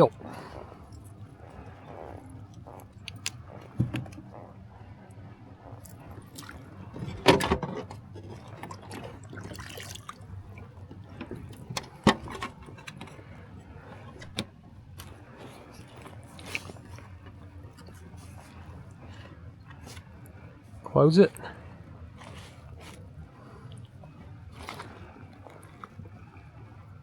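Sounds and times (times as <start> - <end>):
sharp knocks on hull: 3.7 - 4.3
water splashing against kayak: 5.8 - 27.0.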